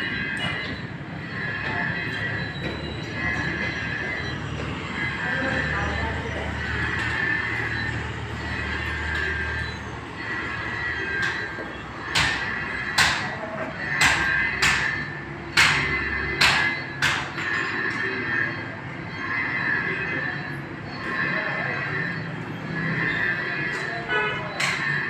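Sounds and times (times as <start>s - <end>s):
furnace drone: 0.0s - 25.0s
high ringing tone: 0.0s - 25.0s
sharp knocks: 11.2s - 18.0s.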